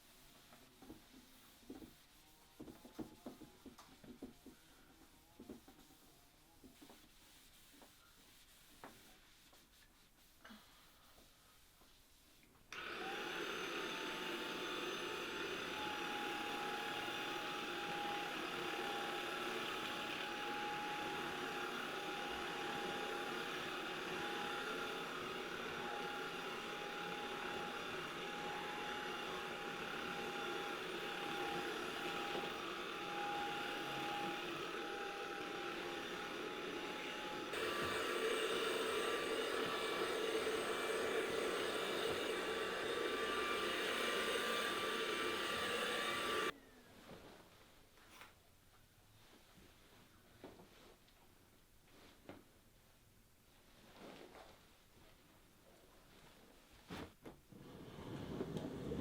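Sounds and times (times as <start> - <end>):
vacuum cleaner motor whine: 12.7 - 46.6.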